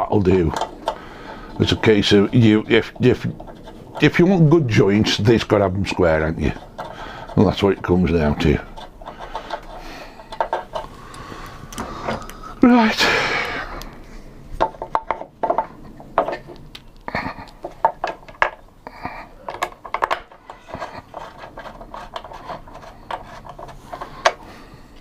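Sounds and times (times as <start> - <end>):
metal tools clinking and tapping: 19.5 - 21.2.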